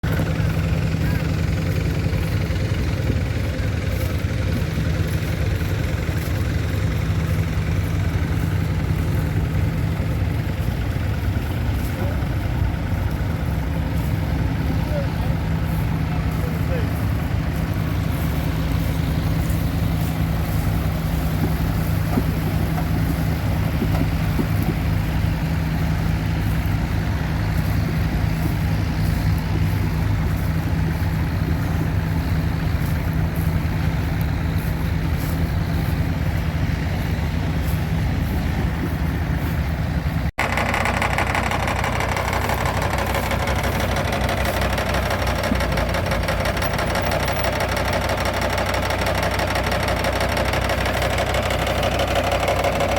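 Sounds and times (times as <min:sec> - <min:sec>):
baler machinery running: 0:00.0 - 0:52.9
tractor engine running: 0:00.0 - 0:52.9.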